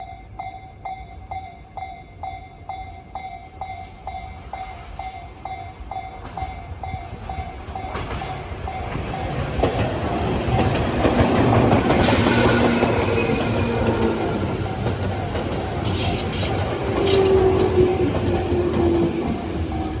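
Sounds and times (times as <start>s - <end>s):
level-crossing warning bell ringing: 0.0s - 20.0s
electric train running: 7.9s - 20.0s
high hiss: 12.0s - 13.2s.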